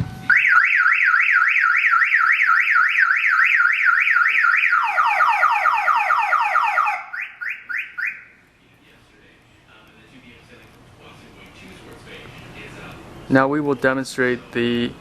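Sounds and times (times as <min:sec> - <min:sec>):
car alarm siren sweeps: 0:00.2 - 0:08.4
car alarm chirps: 0:00.3 - 0:08.4.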